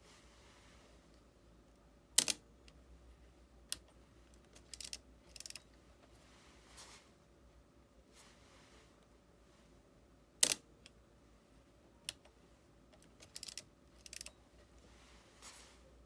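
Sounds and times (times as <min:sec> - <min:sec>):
rapid small mechanical clicks: 0:02.2 - 0:02.4, 0:03.7 - 0:05.6, 0:10.4 - 0:10.6, 0:13.0 - 0:14.3.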